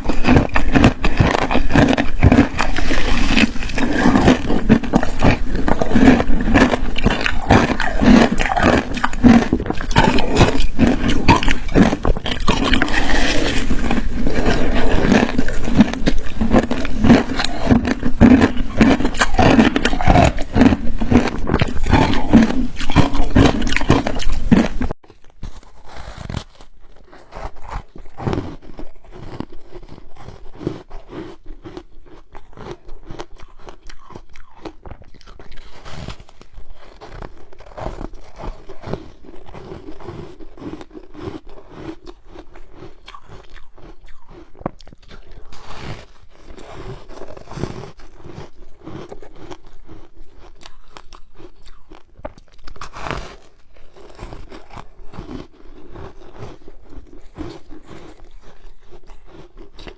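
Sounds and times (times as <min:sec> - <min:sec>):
ice being chewed: 0:00.0 - 0:59.9.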